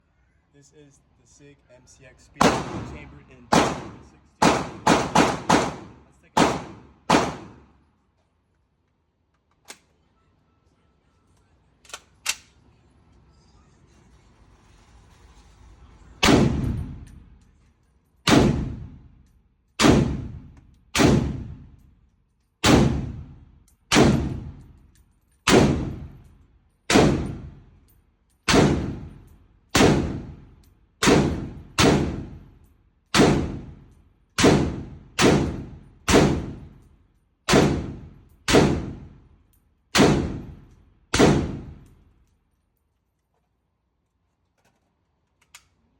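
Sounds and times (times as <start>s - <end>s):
rifle shots: 2.4s - 7.7s, 16.2s - 17.0s, 18.3s - 19.0s, 19.8s - 21.7s, 22.6s - 24.6s, 25.4s - 26.2s, 26.9s - 27.6s, 28.5s - 32.5s, 33.1s - 33.8s, 34.4s - 36.8s, 37.5s - 39.2s, 39.9s - 41.8s.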